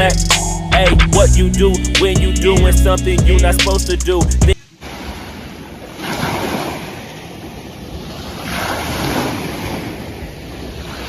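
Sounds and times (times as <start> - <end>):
sea waves washing ashore: 4.6 - 11.0.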